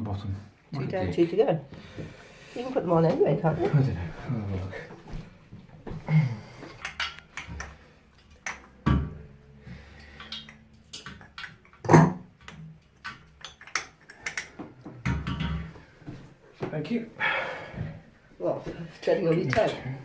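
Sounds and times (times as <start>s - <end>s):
metal tools clinking and knocking: 10.2s - 11.5s.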